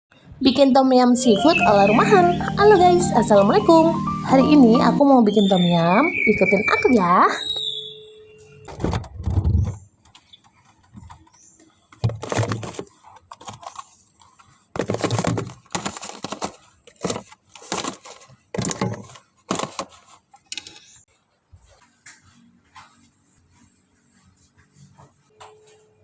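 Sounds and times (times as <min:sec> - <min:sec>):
kitchen items knocking and clattering: 0:12.0 - 0:13.9, 0:14.8 - 0:20.1.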